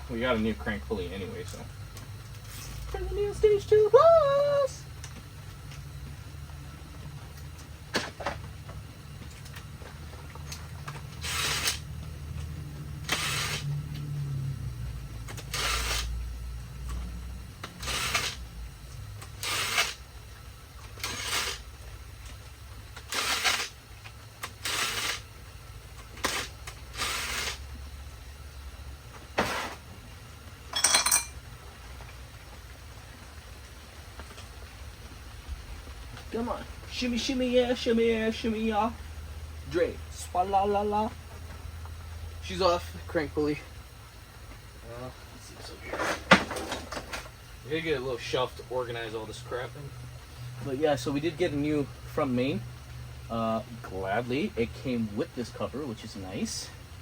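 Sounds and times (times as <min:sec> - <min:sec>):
impact wrench bursts: 0:10.4 - 0:11.9, 0:13.0 - 0:13.8, 0:15.2 - 0:16.2, 0:17.6 - 0:18.5, 0:19.2 - 0:20.1, 0:20.9 - 0:21.7, 0:23.0 - 0:23.8, 0:24.4 - 0:25.3, 0:26.1 - 0:27.7.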